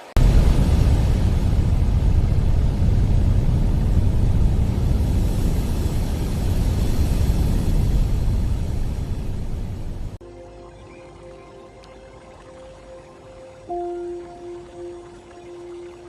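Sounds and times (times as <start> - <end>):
ocean surf: 0.0 - 10.2
wind: 0.0 - 16.0.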